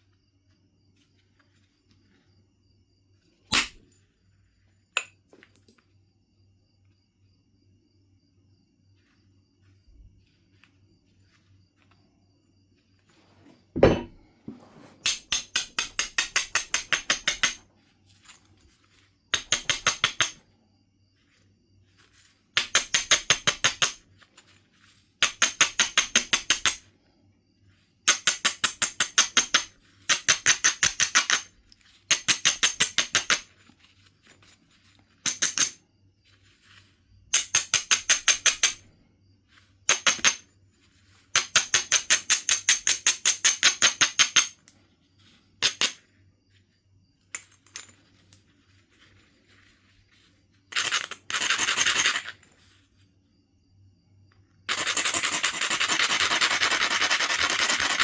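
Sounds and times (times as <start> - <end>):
stone abrading flint edge: 3.5 - 4.0, 15.0 - 17.6, 22.6 - 24.0, 28.1 - 35.8.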